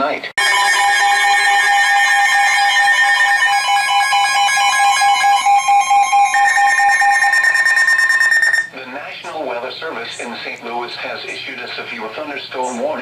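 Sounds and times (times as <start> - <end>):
higher steady tone: 0.4 - 8.7
rapidly pulsing beeping tones: 0.4 - 8.7.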